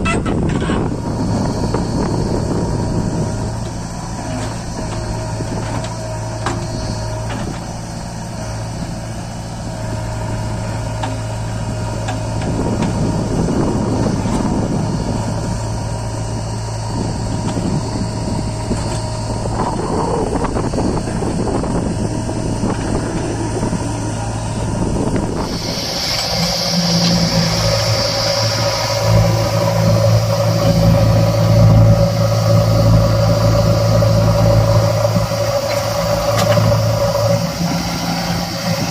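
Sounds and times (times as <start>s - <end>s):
heavy diesel engine running: 0.0s - 38.9s
high steady tone: 23.0s - 38.9s.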